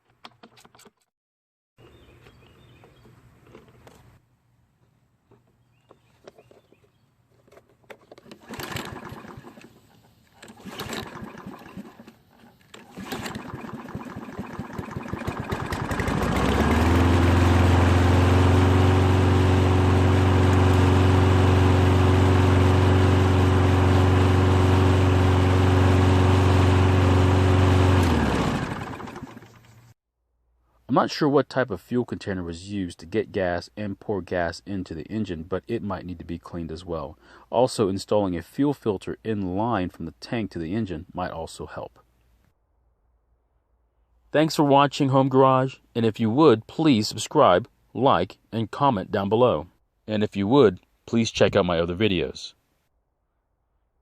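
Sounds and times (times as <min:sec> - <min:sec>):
lawn mower engine running: 0:07.9 - 0:30.0.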